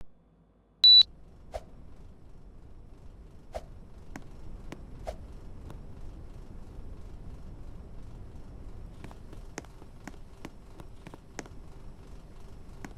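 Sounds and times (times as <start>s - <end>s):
air conditioner beep: 0.8s - 1.1s.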